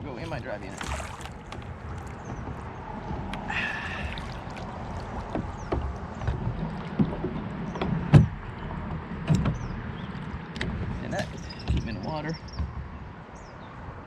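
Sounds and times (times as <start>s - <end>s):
knocks on kayak hull: 4.1s - 8.4s.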